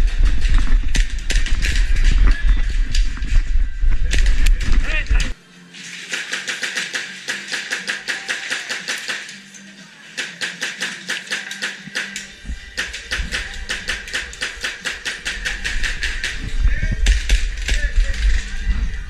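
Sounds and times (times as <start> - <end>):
airsoft gun firing bursts: 6.1 - 9.3, 10.2 - 12.2, 12.8 - 18.2.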